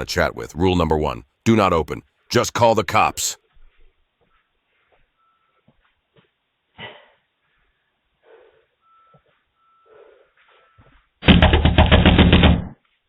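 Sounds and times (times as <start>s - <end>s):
loud pounding on a door: 11.2s - 12.8s.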